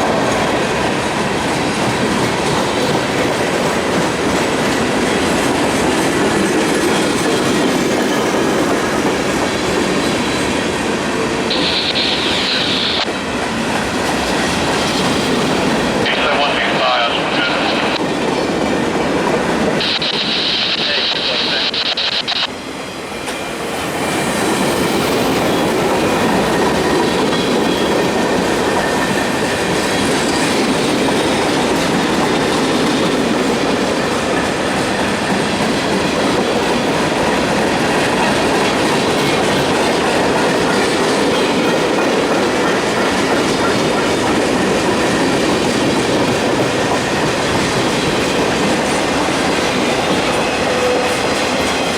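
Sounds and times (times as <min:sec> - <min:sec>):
train wheels clacking on rails: 0:00.0 - 0:22.1, 0:22.7 - 0:51.9
high-pitched sound: 0:11.5 - 0:13.0.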